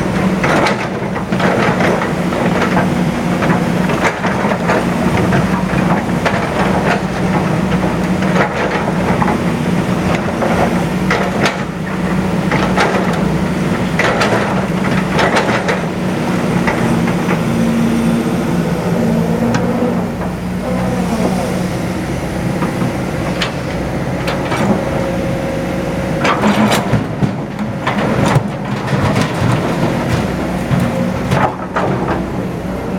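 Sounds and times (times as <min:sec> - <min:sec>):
excavator engine running: 0:00.0 - 0:32.9
clanks and knocks: 0:00.2 - 0:17.8, 0:26.2 - 0:32.4.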